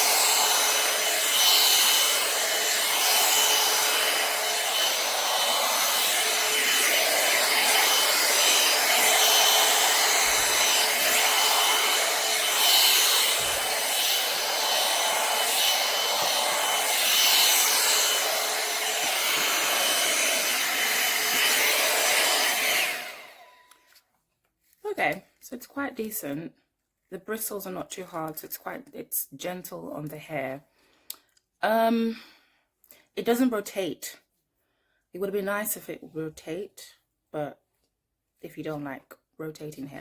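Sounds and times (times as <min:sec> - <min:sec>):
brush rubbing through hair: 0:00.0 - 0:22.6
hot air brush fan rushing: 0:00.0 - 0:23.5.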